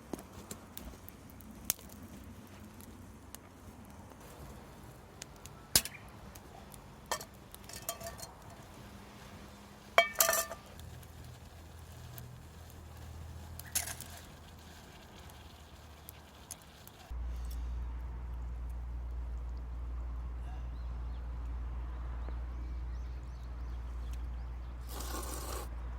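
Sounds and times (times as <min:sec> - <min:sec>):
dishes and utensils clinking: 0:07.1 - 0:08.4, 0:10.0 - 0:10.7.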